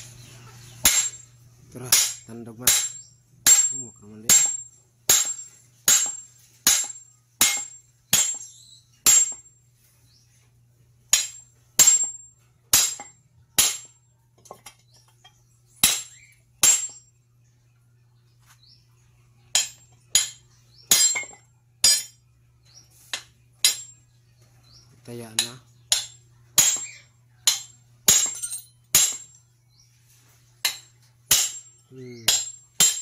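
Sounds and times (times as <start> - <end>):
hammer striking metal: 0.8 - 1.3, 1.9 - 9.5, 11.1 - 14.0, 15.8 - 17.0, 19.5 - 22.2, 23.1 - 24.0, 25.3 - 29.4, 30.6 - 33.0.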